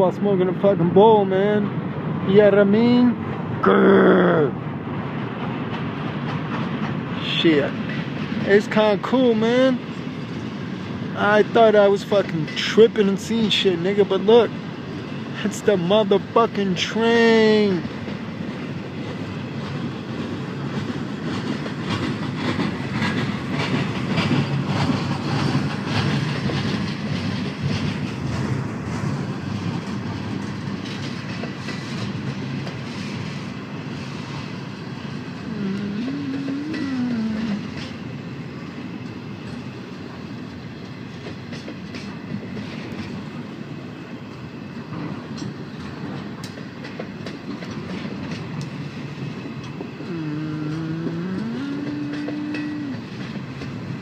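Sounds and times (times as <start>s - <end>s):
train rumbling past: 0.0s - 54.0s
wheels clicking over rail joints: 17.8s - 50.1s.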